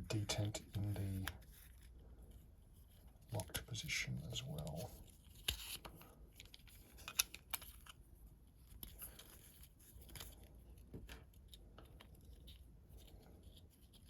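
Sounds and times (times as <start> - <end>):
lock parts clicking and scraping: 5.4 - 8.0.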